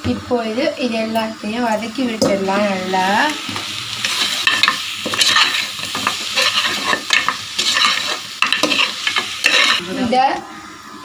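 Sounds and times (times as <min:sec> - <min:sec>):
food sizzling in oil: 0:00.0 - 0:11.0
spoon scraping pot: 0:04.0 - 0:10.0.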